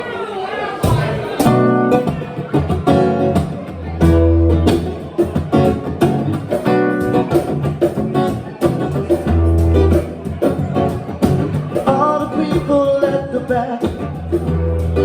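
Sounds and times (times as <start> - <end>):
guitar strumming chords: 0.9 - 15.0
low bass notes: 2.9 - 4.9, 8.1 - 15.0.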